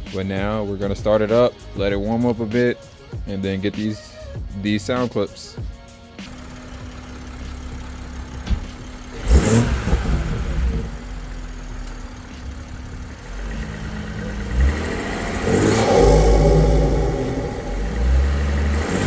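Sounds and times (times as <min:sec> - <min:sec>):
car engine idling and revving: 0:06.2 - 0:19.0.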